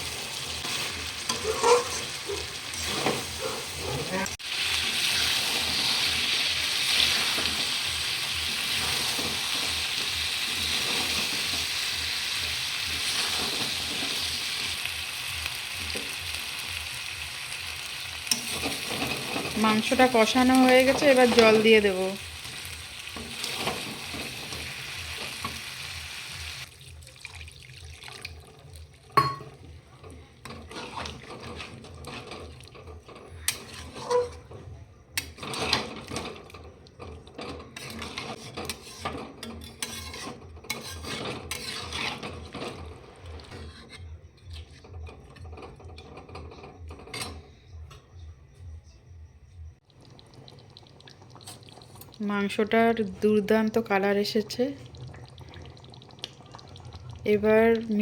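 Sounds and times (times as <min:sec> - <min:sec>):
chicken sizzling in a pot: 0:00.0 - 0:46.8, 0:49.8 - 0:58.0
spatula scraping a pot: 0:00.1 - 0:04.1, 0:30.0 - 0:47.4.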